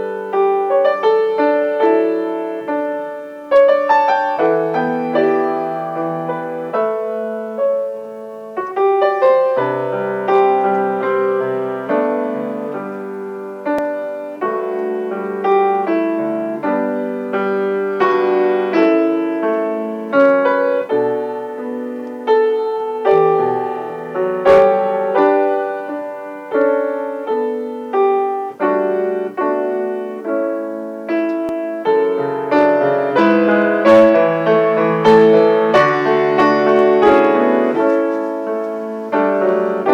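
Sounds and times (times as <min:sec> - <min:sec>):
slow solo piano: 0:00.0 - 0:39.9.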